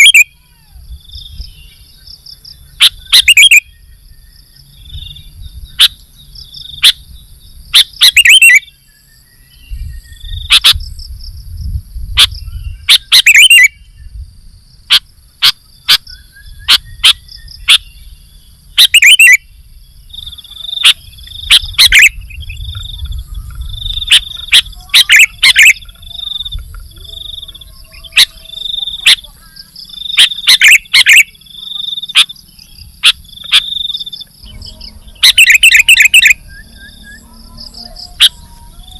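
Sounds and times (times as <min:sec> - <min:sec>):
bird calling sharply: 0:00.0 - 0:00.6, 0:02.7 - 0:03.7, 0:07.8 - 0:08.7, 0:12.2 - 0:13.8, 0:18.8 - 0:19.5, 0:24.0 - 0:32.4, 0:33.0 - 0:38.9.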